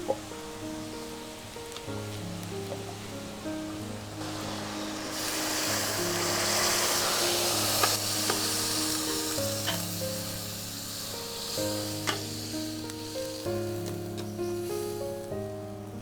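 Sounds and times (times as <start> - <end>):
background music: 0.0 - 16.0
food sizzling in a frying pan: 0.0 - 16.0
utensil clicking against pan: 6.6 - 10.3, 11.5 - 14.4.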